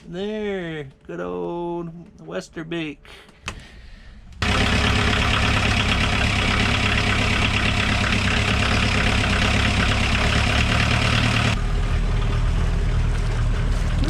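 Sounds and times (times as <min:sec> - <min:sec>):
diesel engine idling: 0:04.4 - 0:14.0.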